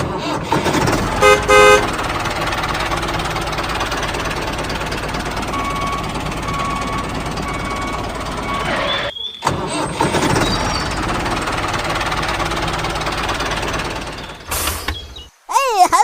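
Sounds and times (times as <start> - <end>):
vehicle engine running: 0.0 - 15.3
short horn toots: 1.2 - 1.9.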